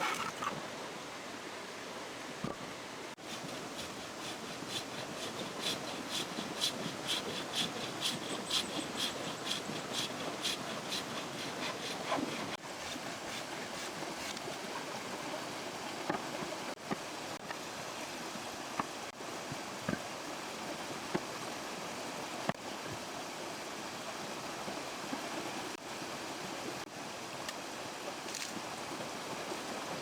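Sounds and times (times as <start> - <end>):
hand tool scraping wood: 3.2 - 14.6.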